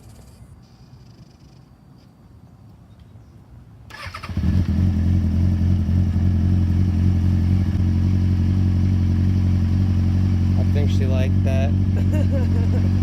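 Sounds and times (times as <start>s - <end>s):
motorcycle engine starter clatter: 3.9s - 4.4s
motorcycle engine idling: 4.0s - 13.0s.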